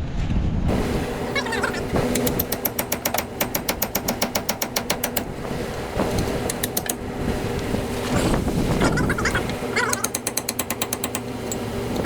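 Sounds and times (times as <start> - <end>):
chisel hammering on metal: 2.1 - 5.4, 6.4 - 7.0, 9.8 - 11.7.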